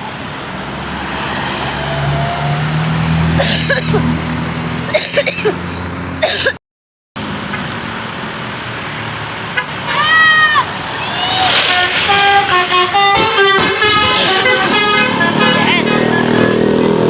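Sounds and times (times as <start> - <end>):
bus engine running: 7.2 - 17.0.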